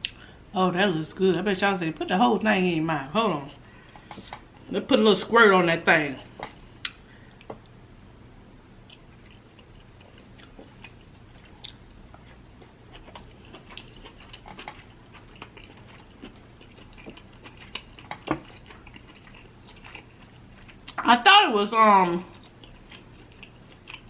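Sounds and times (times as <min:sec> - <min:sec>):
person chewing: 0:08.8 - 0:21.0, 0:22.3 - 0:24.0.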